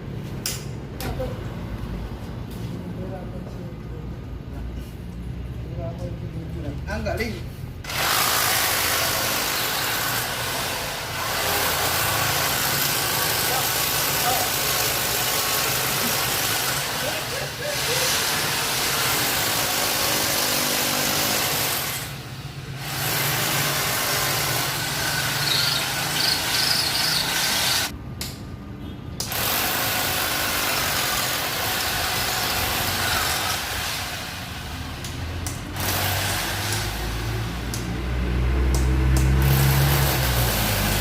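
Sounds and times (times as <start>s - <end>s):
welding arc hissing and crackling: 8.0s - 27.9s.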